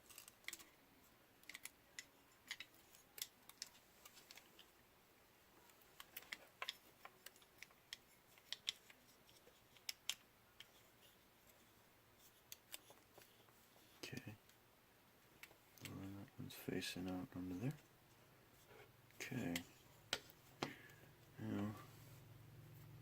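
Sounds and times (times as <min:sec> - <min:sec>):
small parts clicking: 0:00.0 - 0:00.8, 0:01.4 - 0:04.7, 0:06.0 - 0:10.8.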